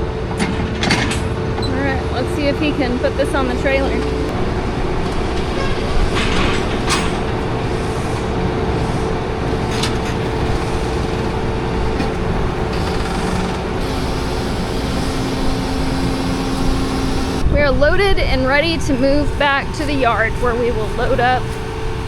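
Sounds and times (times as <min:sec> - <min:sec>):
farm machinery engine running: 0:00.0 - 0:22.0
metallic clanks and rattles: 0:00.4 - 0:01.4, 0:05.0 - 0:08.1.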